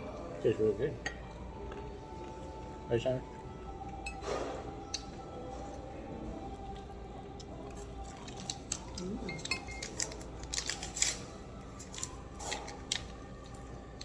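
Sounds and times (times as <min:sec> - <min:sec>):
tableware clinking: 0:01.0 - 0:01.3, 0:09.2 - 0:10.2.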